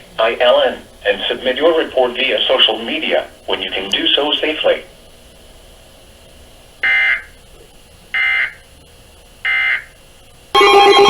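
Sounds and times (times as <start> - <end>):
multi-pitch alert tone: 10.6 - 11.0.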